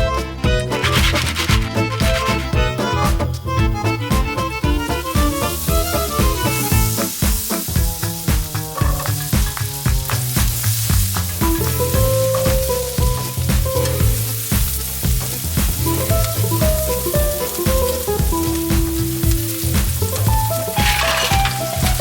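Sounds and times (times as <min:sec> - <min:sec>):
background music with a beat: 0:00.0 - 0:22.0
food sizzling in a hot pan: 0:04.8 - 0:22.0.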